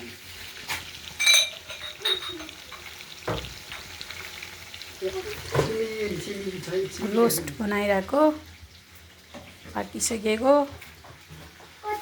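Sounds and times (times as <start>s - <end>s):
chicken sizzling in a pan: 0.0s - 12.0s
metal utensil clinking on pan: 1.2s - 3.9s.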